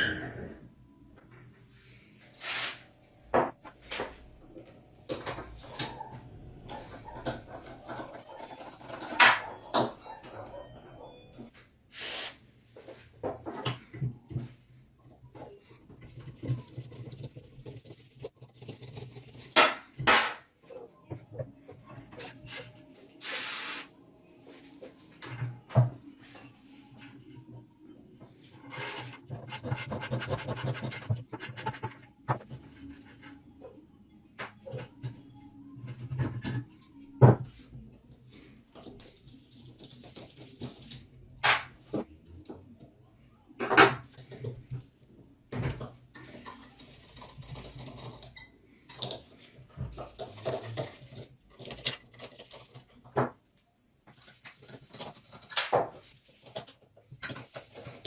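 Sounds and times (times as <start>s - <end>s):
spray hiss: 11.9s - 12.4s, 23.2s - 23.9s
metal parts scraping and rubbing: 22.1s - 23.8s, 28.5s - 33.4s.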